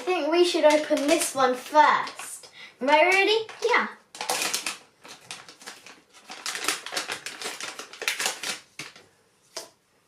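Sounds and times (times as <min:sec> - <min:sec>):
plastic packaging crackling: 0:00.0 - 0:09.7.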